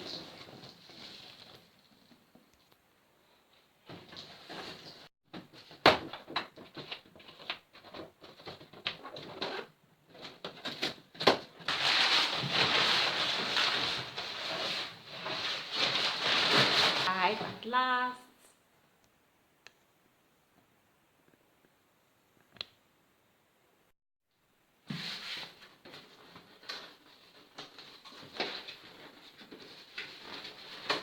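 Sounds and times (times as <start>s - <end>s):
cardboard rustling: 3.9s - 17.1s.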